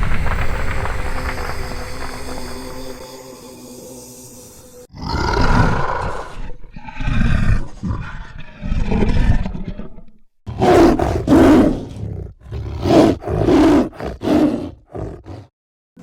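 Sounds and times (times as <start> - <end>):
animal roars: 4.9 - 15.5.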